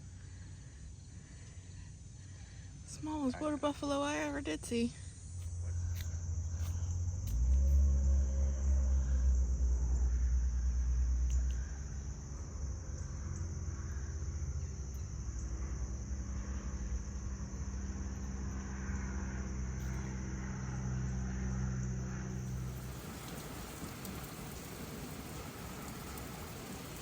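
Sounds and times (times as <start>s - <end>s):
car engine and road rumble: 5.5s - 11.5s, 17.0s - 27.0s
rain hissing: 22.3s - 27.0s.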